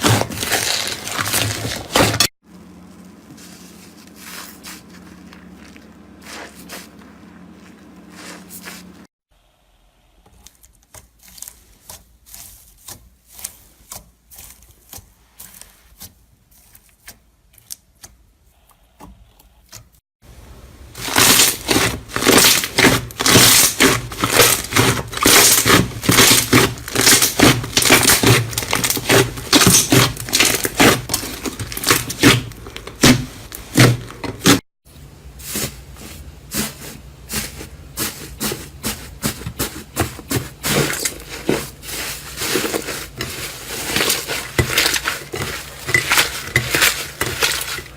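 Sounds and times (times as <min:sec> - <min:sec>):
slime crackling and popping: 0:21.0 - 0:34.5.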